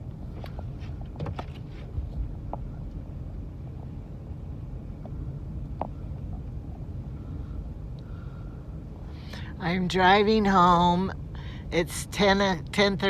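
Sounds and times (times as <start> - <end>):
car driving rumble inside cabin: 0.0 - 13.0.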